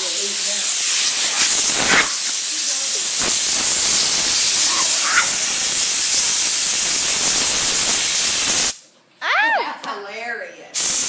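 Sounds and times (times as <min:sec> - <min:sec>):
hiss of rushing blown air: 0:00.0 - 0:08.8.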